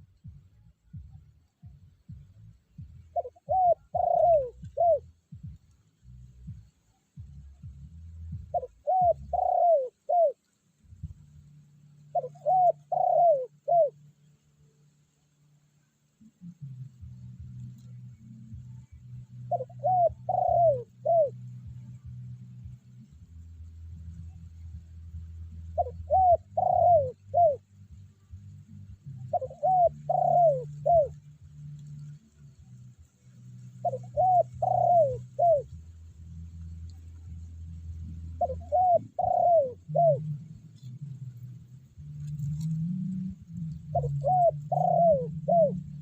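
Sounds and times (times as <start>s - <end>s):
faint low hum: 0.0s - 46.0s
dove cooing: 2.7s - 5.8s, 8.3s - 11.4s, 12.0s - 14.2s, 16.4s - 22.3s, 25.5s - 32.2s, 33.6s - 46.0s.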